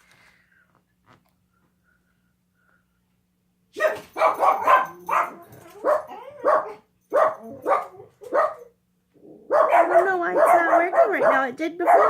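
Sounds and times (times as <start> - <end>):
dog barking: 3.7 - 8.8, 9.5 - 12.0.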